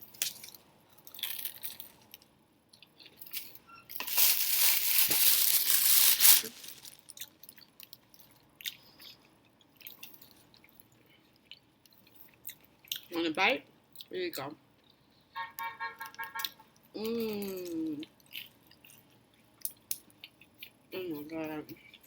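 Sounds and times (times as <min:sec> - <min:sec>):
quiet chewing with wet clicks: 0:07.1 - 0:13.1, 0:17.4 - 0:20.8.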